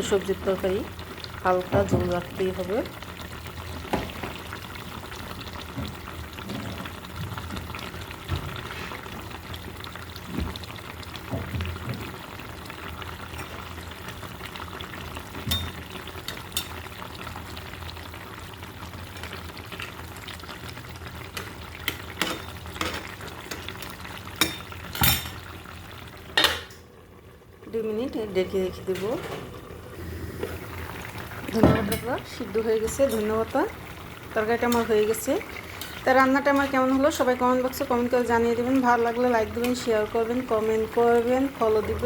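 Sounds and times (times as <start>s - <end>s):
curry simmering and bubbling: 0.3s - 42.0s.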